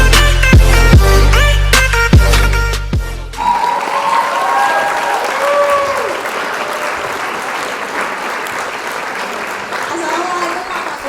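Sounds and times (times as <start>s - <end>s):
applause: 3.4s - 11.0s
voices cheering: 3.4s - 11.0s.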